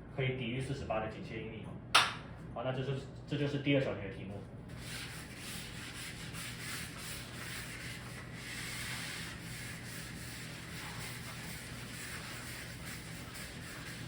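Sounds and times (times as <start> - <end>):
low electrical hum: 0.0 - 14.0
pen scratching on paper: 4.8 - 14.0.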